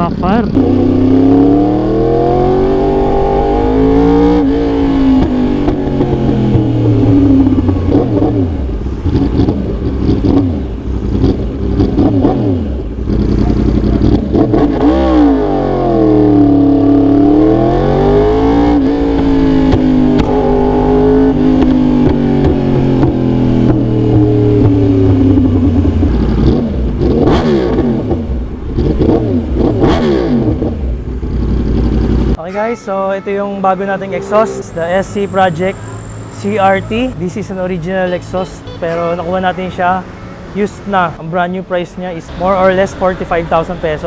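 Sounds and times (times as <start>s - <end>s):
motorcycle engine revving: 0.0s - 32.4s, 42.2s - 44.0s
exhaust pops and crackles: 18.8s - 20.6s, 21.3s - 32.4s.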